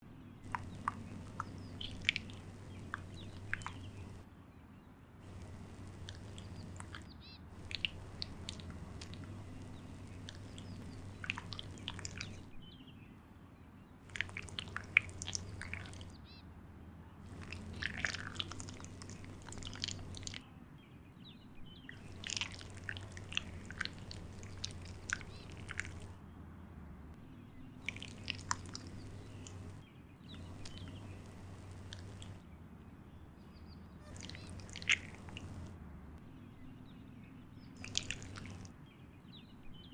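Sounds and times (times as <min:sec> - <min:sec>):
low steady hum: 0:00.0 - 0:39.9
wet slime squelching: 0:00.4 - 0:04.2, 0:05.3 - 0:12.6, 0:14.1 - 0:16.2, 0:17.3 - 0:20.4, 0:21.8 - 0:26.2, 0:27.8 - 0:32.4, 0:34.0 - 0:35.8, 0:37.8 - 0:38.7.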